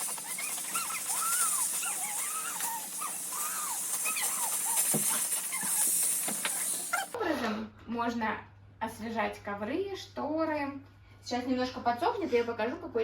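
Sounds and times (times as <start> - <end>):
squeaky chirps: 0.0 - 7.2
steam cleaner hissing: 0.0 - 7.2.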